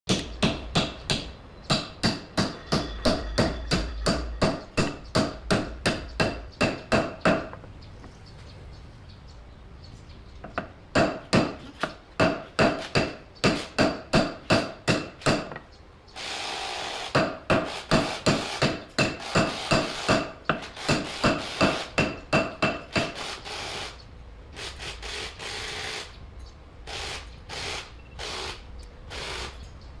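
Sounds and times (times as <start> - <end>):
hammer striking metal: 0.1 - 7.5.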